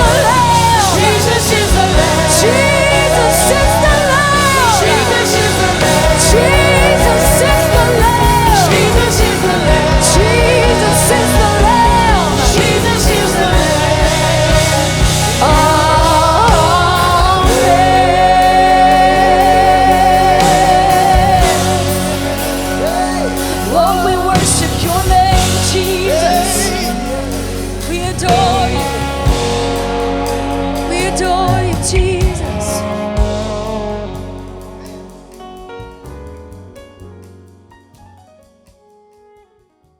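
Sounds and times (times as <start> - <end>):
person singing long notes: 0.0 - 29.6
live worship song with band: 0.0 - 39.1.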